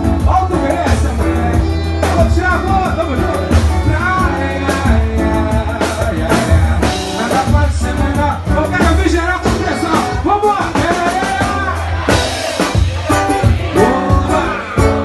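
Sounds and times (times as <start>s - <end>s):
person singing: 0.0s - 10.1s, 13.1s - 15.0s
drum kit: 0.0s - 15.0s
strong bass: 0.0s - 15.0s.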